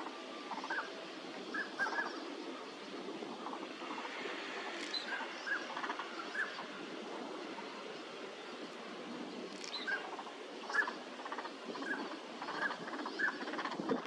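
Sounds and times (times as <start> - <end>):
steady background hiss: 0.0 - 14.0
ducks calling: 3.3 - 6.8.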